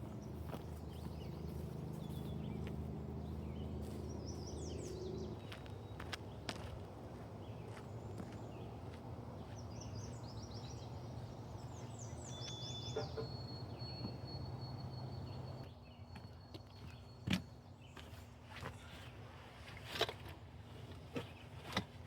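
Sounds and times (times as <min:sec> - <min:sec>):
songbird chirping: 0:07.4 - 0:18.1.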